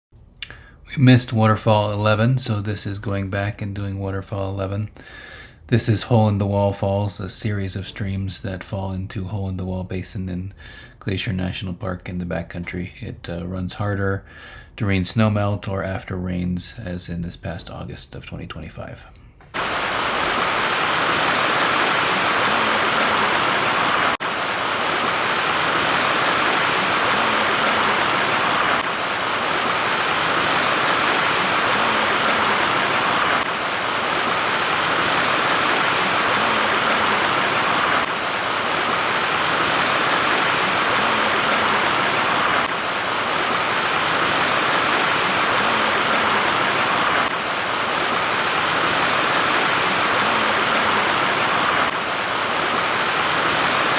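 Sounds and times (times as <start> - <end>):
waterfall rushing: 19.6 - 53.9.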